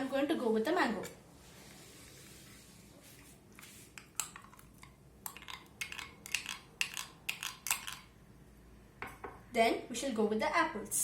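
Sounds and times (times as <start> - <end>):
utensil clinking against a dish: 5.2 - 8.1.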